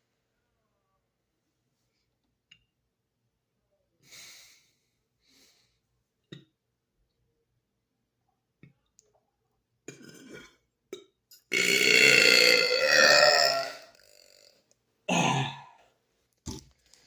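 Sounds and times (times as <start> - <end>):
man burping: 9.9 - 15.8.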